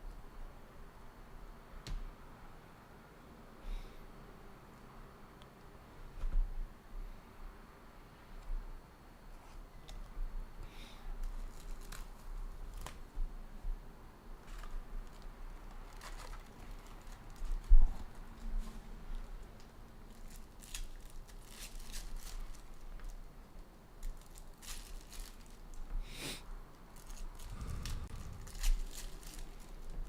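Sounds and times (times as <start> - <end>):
wrappers crinkling and tearing: 11.2 - 13.0, 14.4 - 23.2, 24.0 - 25.9, 26.9 - 30.0.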